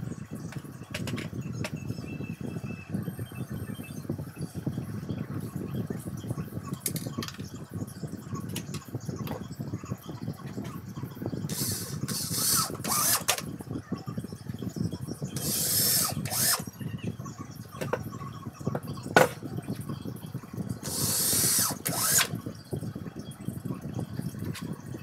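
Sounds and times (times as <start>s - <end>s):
grinding machine humming: 11.5s - 13.4s, 20.8s - 22.4s.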